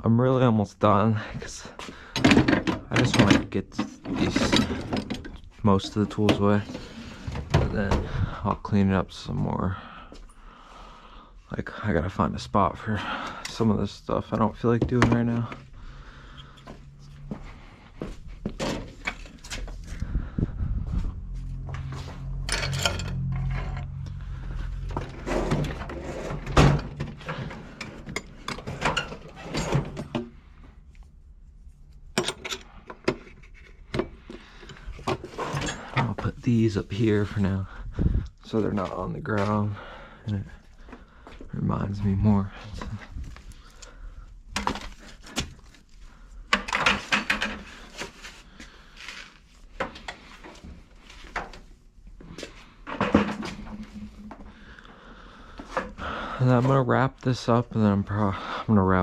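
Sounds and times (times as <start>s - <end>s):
tools clattering and knocking: 2.1s - 8.2s, 14.3s - 15.7s, 18.4s - 19.9s, 22.3s - 24.0s, 24.8s - 30.4s, 32.1s - 36.3s, 46.5s - 48.2s, 52.8s - 54.5s.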